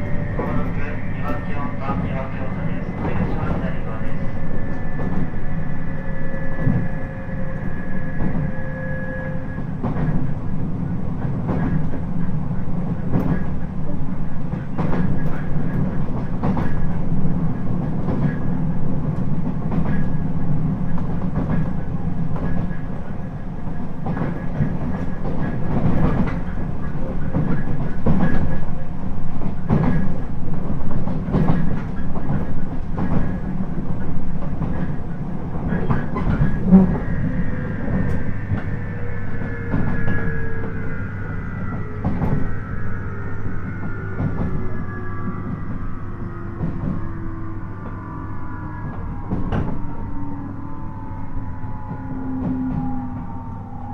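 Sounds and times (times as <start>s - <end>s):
high train whine: 0.0s - 53.9s
train interior rumble: 0.0s - 53.9s
rail-joint clicks: 9.6s - 38.8s, 46.6s - 47.1s.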